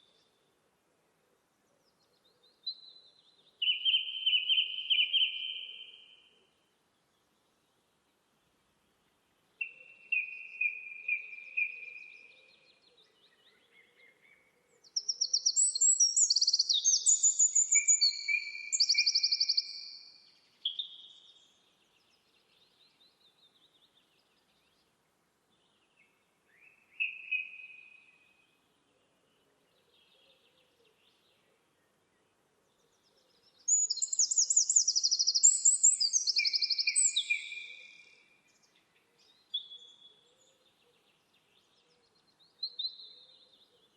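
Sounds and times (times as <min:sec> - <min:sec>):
songbird trilling: 0:15.0 - 0:19.9, 0:33.7 - 0:38.0.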